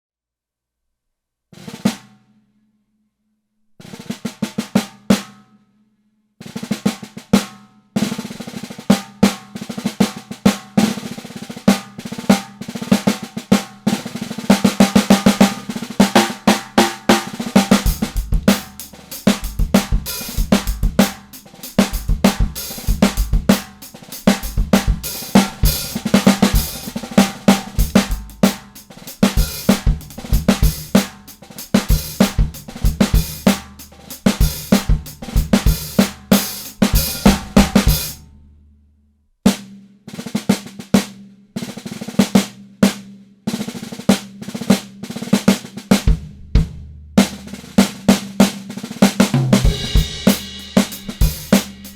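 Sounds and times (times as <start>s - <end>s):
snare drum hits and rolls: 8.3s - 38.2s, 47.2s - 51.9s
bass drum: 15.1s - 38.5s, 46.0s - 47.5s, 49.3s - 51.9s.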